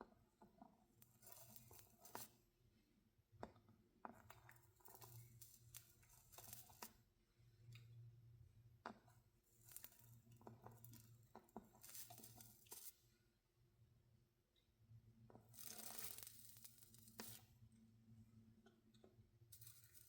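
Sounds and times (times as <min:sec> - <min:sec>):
soldering iron sizzling: 0:01.0 - 0:02.4, 0:04.2 - 0:07.0, 0:09.4 - 0:13.0, 0:15.4 - 0:17.6, 0:19.5 - 0:20.0.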